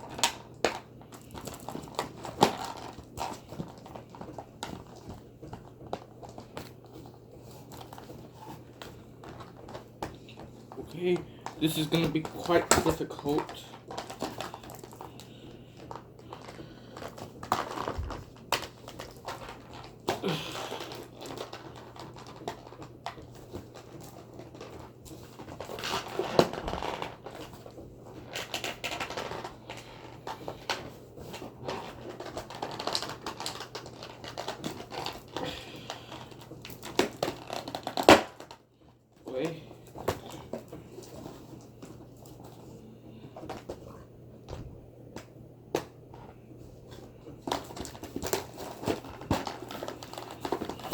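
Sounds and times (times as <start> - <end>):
packaging crinkling: 0.0 - 44.0, 45.8 - 50.9
plastic scraping and clicking: 45.8 - 50.9.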